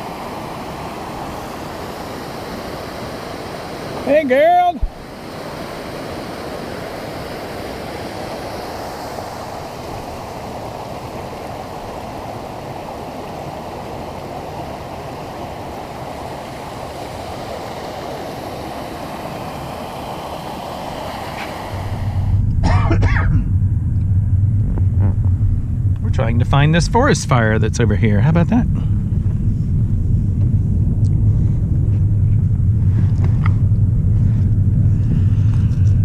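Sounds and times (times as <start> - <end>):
waterfall rushing: 0.0 - 22.4
car driving interior rumble: 21.8 - 36.0.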